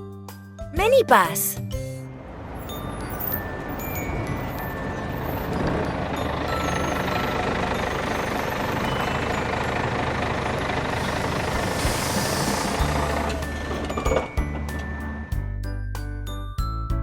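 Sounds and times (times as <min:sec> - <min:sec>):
minibus engine running: 0:01.8 - 0:15.6.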